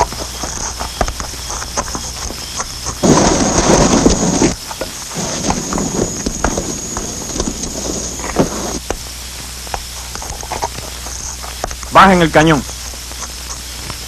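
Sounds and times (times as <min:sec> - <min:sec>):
footsteps: 0:00.0 - 0:09.0
faint high whine: 0:00.0 - 0:14.0.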